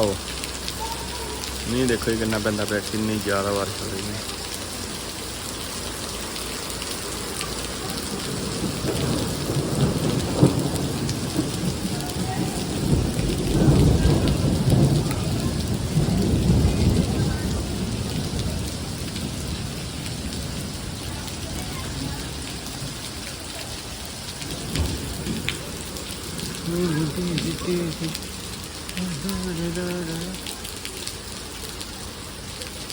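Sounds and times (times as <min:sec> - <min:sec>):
heavy rain pouring: 0:00.0 - 0:32.9
rolling thunder: 0:07.4 - 0:29.6.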